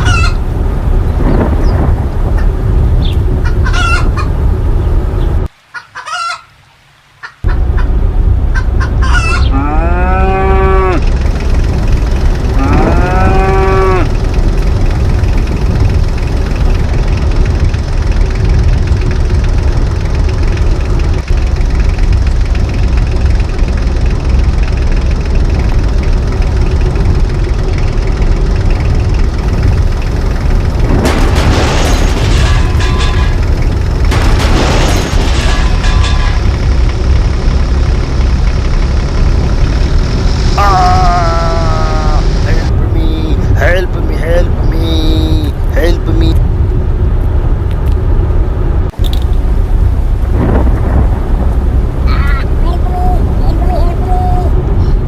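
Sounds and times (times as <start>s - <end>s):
chickens clucking: 0.0s - 0.4s, 2.4s - 4.4s, 5.7s - 6.5s, 7.2s - 9.7s
storm wind: 0.0s - 5.6s, 7.5s - 55.0s.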